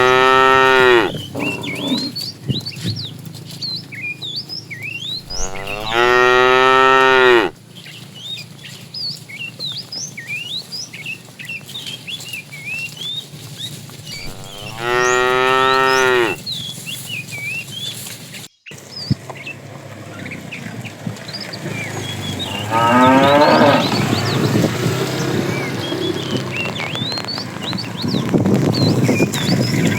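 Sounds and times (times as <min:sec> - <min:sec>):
cattle mooing: 0:00.0 - 0:02.2, 0:05.2 - 0:07.6, 0:14.2 - 0:16.4, 0:21.7 - 0:24.6
small birds chirping: 0:00.0 - 0:29.9.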